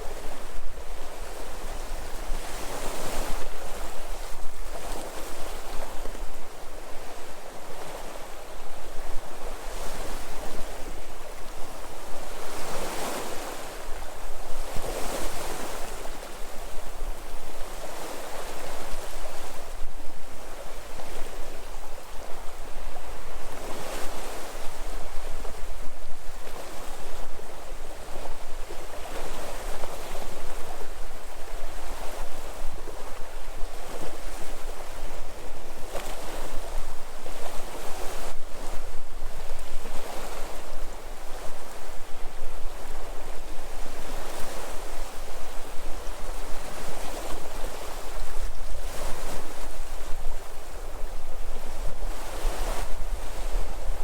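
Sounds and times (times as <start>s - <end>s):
sea waves washing ashore: 0.0s - 54.0s.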